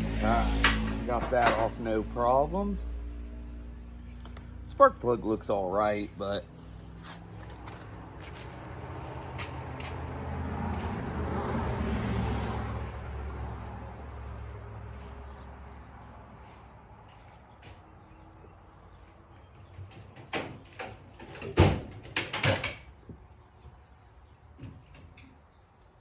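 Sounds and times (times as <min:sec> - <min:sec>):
passing vehicle engine hum: 0:00.0 - 0:19.1.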